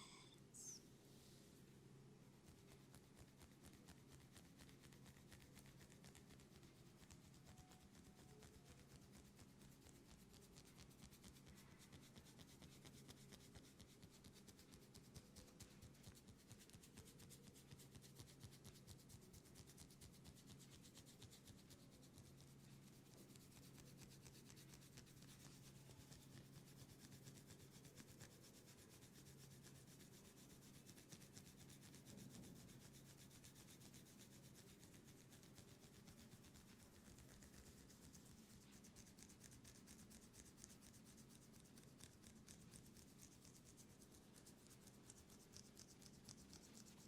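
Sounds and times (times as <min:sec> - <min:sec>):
low steady hum: 0:00.0 - 0:11.9, 0:32.1 - 0:47.0
hands rubbing oiled skin: 0:02.4 - 0:07.4, 0:09.0 - 0:47.0.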